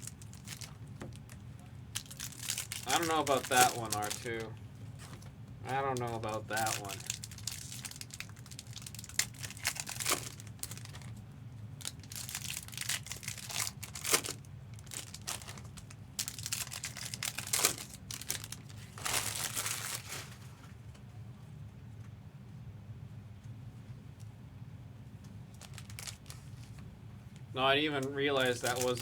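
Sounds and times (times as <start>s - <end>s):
wrappers crinkling and tearing: 0.0s - 11.2s, 11.8s - 20.6s, 25.6s - 26.8s, 28.4s - 29.0s
steady low hum: 0.0s - 29.0s.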